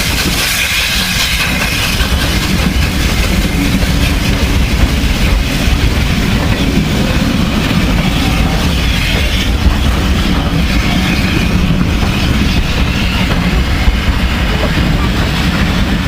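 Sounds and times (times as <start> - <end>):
train wheels rumbling on rails: 0.0 - 16.0.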